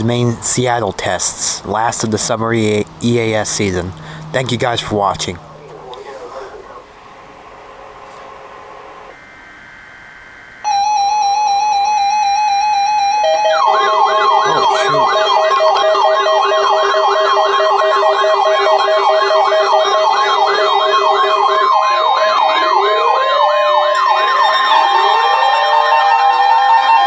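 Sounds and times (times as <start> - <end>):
steady electronic tones: 0.8 - 27.0
electronic siren yelping: 3.1 - 27.0
siren wail sweeps: 3.4 - 27.0.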